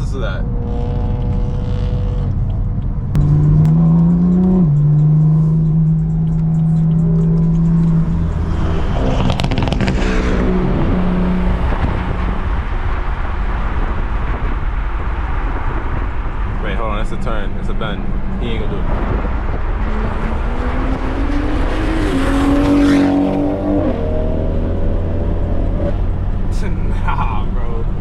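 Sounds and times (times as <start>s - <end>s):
car engine accelerating hard: 0.0s - 28.0s
loud rushing noise: 8.0s - 28.0s.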